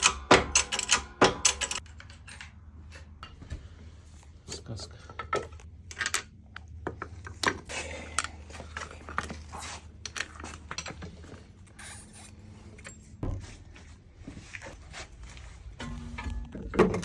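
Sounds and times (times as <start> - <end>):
metal parts clinking and scraping: 0.0 - 3.3, 4.5 - 13.2
steady low hum: 12.3 - 17.0.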